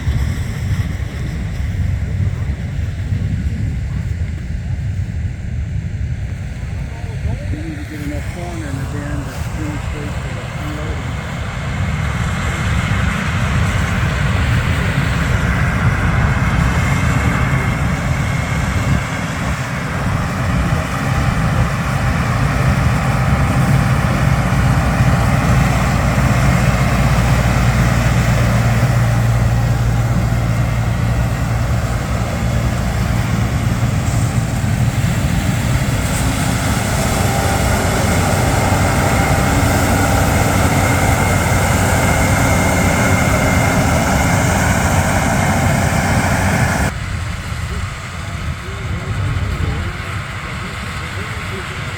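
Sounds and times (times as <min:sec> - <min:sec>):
combine harvester diesel engine drone: 0:00.0 - 0:51.9
harvesting machinery rushing: 0:06.6 - 0:46.9.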